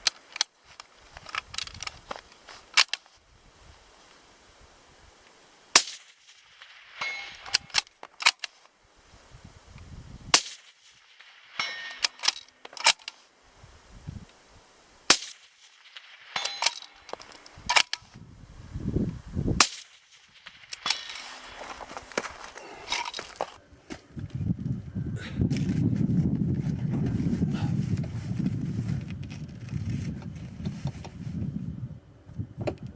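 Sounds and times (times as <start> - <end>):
metallic clicks: 0.0 - 3.2, 7.0 - 8.7, 11.5 - 13.2, 15.1 - 18.2, 19.6 - 21.9, 22.5 - 23.6
suppressed rifle shots: 5.7 - 8.6, 10.3 - 13.2, 15.1 - 18.1, 19.6 - 21.7.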